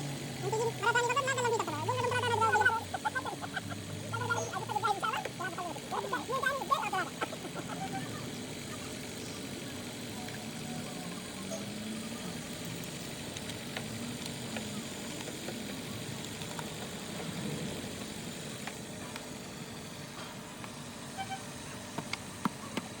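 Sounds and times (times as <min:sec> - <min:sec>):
car engine idling: 0:00.0 - 0:23.0.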